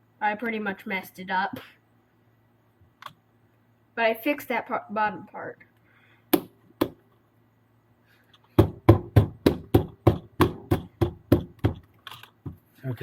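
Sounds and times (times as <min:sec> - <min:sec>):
sharp knocking on hard surface: 0:06.3 - 0:07.0, 0:08.6 - 0:12.6.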